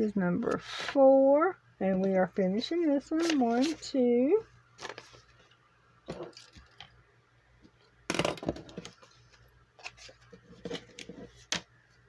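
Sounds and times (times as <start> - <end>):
paper rustling: 3.1 - 3.8.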